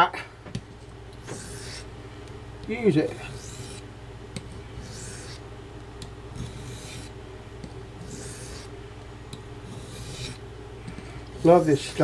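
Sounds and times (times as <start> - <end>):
knife scraping on sharpening stone: 1.3 - 1.9, 3.1 - 3.8, 4.8 - 5.4, 6.4 - 7.1, 8.0 - 8.7, 9.6 - 10.4.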